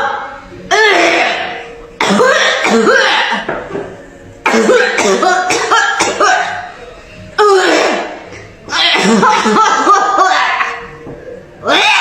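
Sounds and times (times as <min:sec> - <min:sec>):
person coughing in hacking fits: 0:00.7 - 0:03.6, 0:04.4 - 0:06.7, 0:07.4 - 0:10.8.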